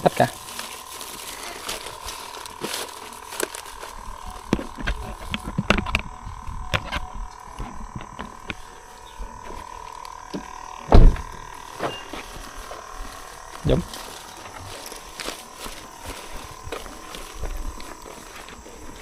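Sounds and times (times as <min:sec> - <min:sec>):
steady high-pitched hum: 0:00.0 - 0:19.0
loud bump: 0:10.9 - 0:11.4.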